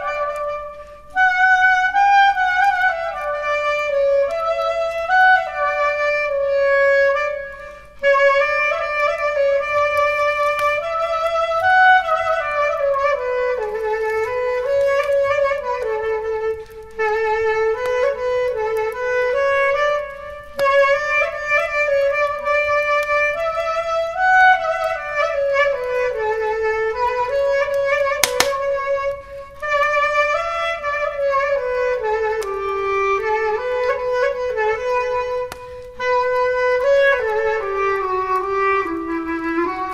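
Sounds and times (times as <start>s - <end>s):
solo clarinet melody: 0.0s - 28.0s, 29.6s - 39.9s
sharp crack: 28.2s - 29.2s.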